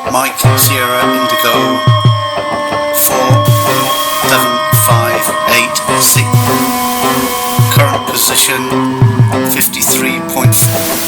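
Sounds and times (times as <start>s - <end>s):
sustained keyboard tones: 0.4s - 11.0s
hiss: 3.4s - 8.4s, 9.8s - 11.0s.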